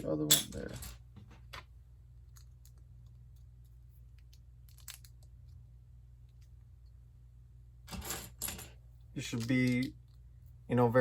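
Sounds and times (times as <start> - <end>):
low steady hum: 0.0 - 11.0
plastic pieces clicking: 4.3 - 5.3.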